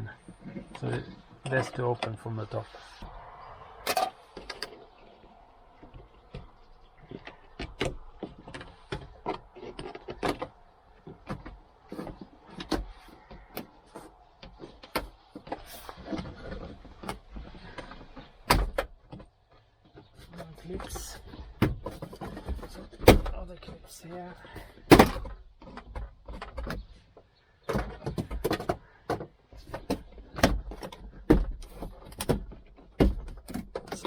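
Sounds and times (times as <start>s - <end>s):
plastic trim clicking and creaking: 5.8s - 19.4s.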